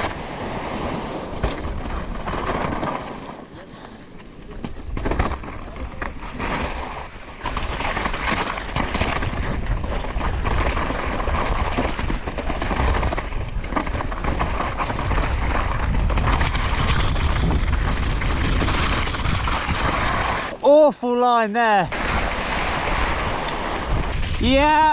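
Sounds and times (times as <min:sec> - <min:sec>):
bike rattling over bumps: 0:00.0 - 0:20.5, 0:21.9 - 0:24.9
wind buffeting microphone: 0:04.6 - 0:20.6, 0:21.9 - 0:24.9.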